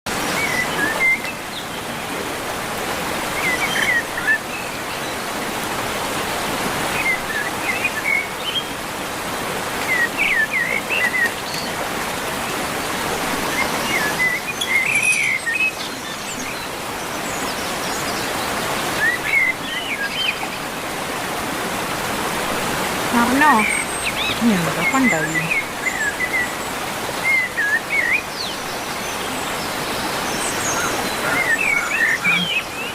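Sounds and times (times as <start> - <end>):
flowing water rushing: 0.1 - 32.9
bird chirps: 13.9 - 16.5, 30.7 - 32.6.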